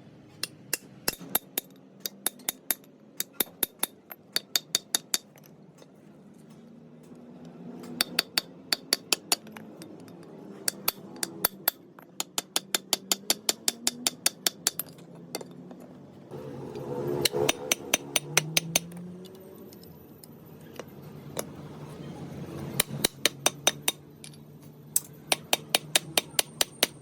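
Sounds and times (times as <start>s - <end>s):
metal hammer taps: 17.2s - 21.6s, 22.8s - 24.4s, 25.0s - 27.0s.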